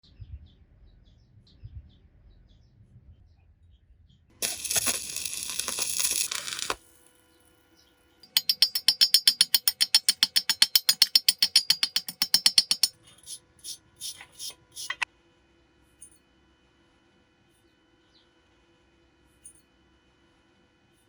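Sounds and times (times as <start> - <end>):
rapid metallic tapping: 4.4 - 6.8, 8.2 - 15.0
harsh crackling noise: 4.4 - 7.2.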